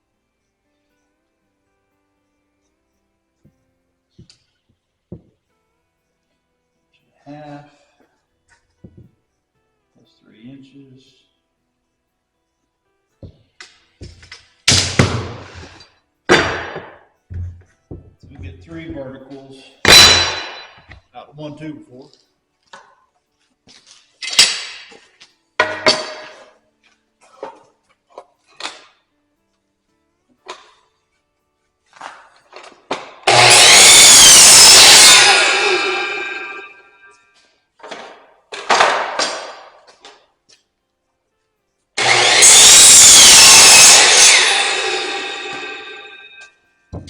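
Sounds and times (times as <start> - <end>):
wooden lumber knocking: 5.1 - 5.3, 8.8 - 9.2, 14.0 - 15.7, 16.3 - 19.2
light wood taps: 8.8 - 9.2
power saw cutting wood: 14.0 - 16.9, 17.9 - 20.8, 32.6 - 37.2, 42.0 - 47.0.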